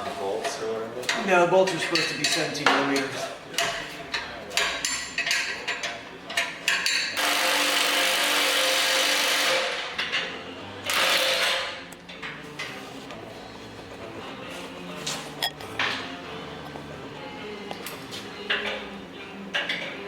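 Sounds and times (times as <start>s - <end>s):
air wrench running: 7.2s - 9.8s.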